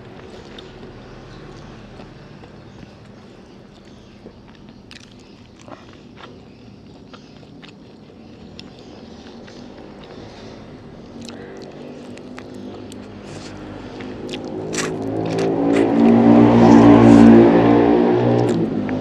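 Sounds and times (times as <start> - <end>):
vehicle engine passing by: 0.0 - 3.8, 9.2 - 19.0
chewing on chicken bones: 0.0 - 17.4, 18.2 - 19.0.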